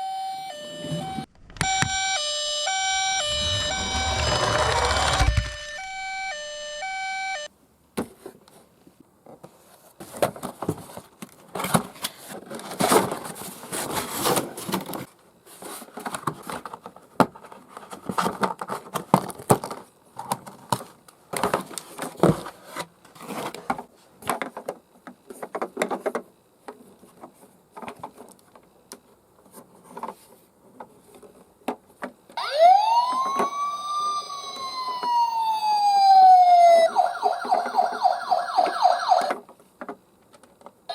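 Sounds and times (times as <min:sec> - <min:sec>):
toy electronic siren: 0:00.0 - 0:07.5, 0:32.4 - 0:39.4.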